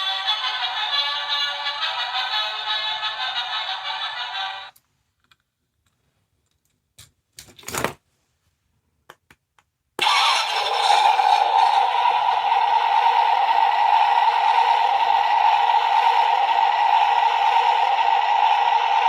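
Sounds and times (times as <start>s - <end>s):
toy speaker playing sounds: 10.0s - 13.5s
loud steady buzzing: 10.0s - 19.0s.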